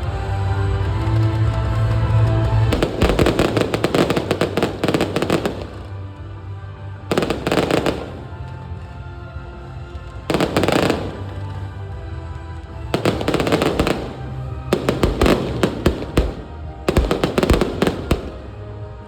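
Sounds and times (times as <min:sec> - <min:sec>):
music: 0:00.0 - 0:19.0
fireworks crackling pops: 0:01.1 - 0:06.1, 0:07.1 - 0:08.8, 0:10.1 - 0:11.8, 0:12.6 - 0:18.7.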